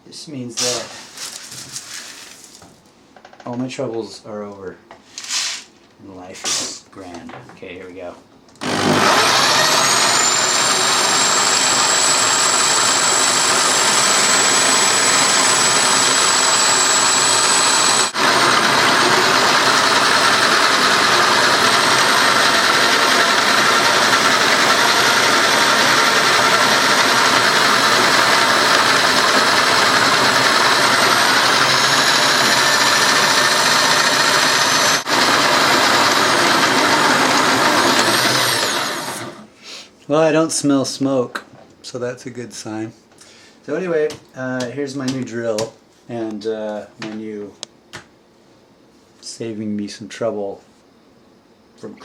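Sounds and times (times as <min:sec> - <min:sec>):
drill motor whine: 0:08.6 - 0:39.5
grain grinding in roller mill: 0:08.6 - 0:39.5.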